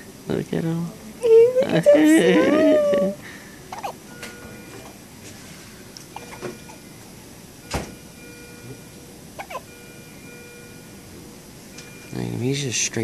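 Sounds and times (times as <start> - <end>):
faint baby sounds: 2.4 - 4.0
baby hiccuping: 3.7 - 4.0, 6.2 - 6.8, 9.4 - 9.7.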